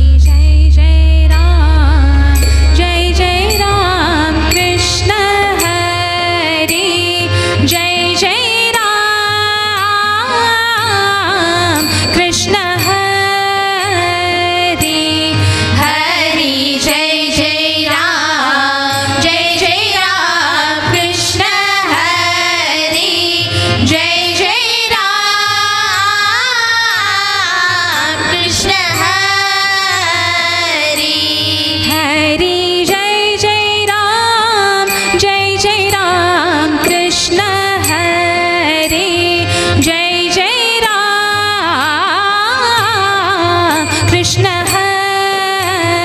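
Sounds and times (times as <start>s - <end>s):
drum beats: 0.0s - 8.2s
sharp percussion strikes: 0.0s - 46.0s
women singing: 0.0s - 46.0s.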